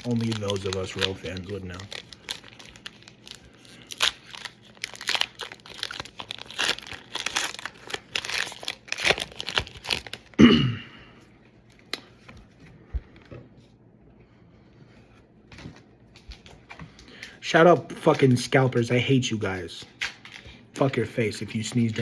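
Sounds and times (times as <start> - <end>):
foil wrapper crinkling and tearing: 0.0 - 10.4.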